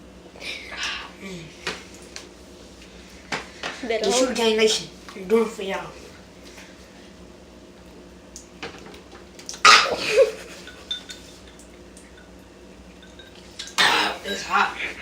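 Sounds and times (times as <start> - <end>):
cup clinking: 10.6 - 12.3, 12.9 - 14.2.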